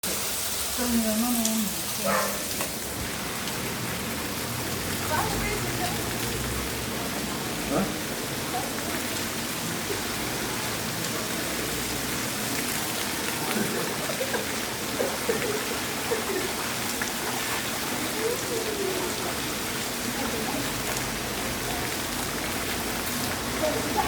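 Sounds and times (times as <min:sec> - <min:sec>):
heavy rain falling: 0:00.0 - 0:24.0
faint voices: 0:05.1 - 0:22.5.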